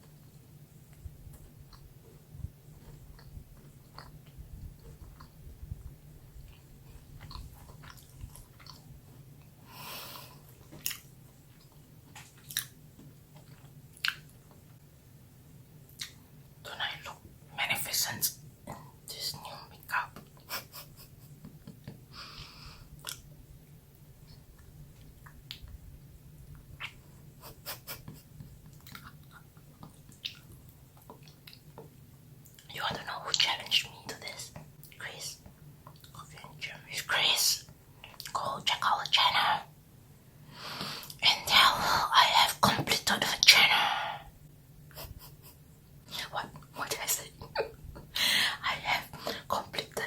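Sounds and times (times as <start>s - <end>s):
faint low hum: 0.0s - 50.0s
chewing with wet clicks: 0.9s - 1.9s, 2.8s - 5.4s, 7.2s - 9.5s, 10.7s - 14.8s, 15.9s - 16.2s, 23.0s - 23.3s, 24.3s - 25.8s, 28.4s - 32.7s, 35.8s - 36.2s, 38.0s - 38.4s.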